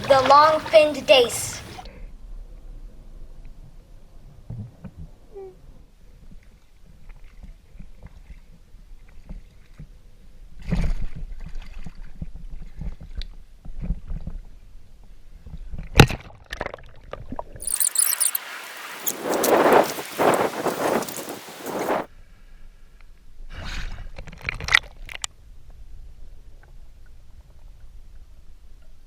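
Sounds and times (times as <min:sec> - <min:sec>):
water sloshing and splashing: 0:00.0 - 0:01.8, 0:16.4 - 0:22.1
steady hiss: 0:17.6 - 0:22.1.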